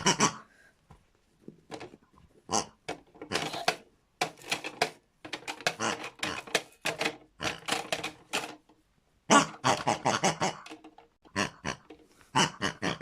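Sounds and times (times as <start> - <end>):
pigs grunting: 11.3 - 13.0.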